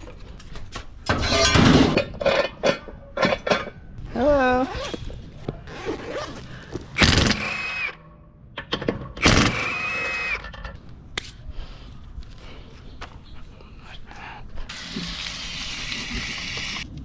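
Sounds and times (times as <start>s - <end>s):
cordless power tool whine: 7.0s - 7.9s, 9.2s - 10.4s.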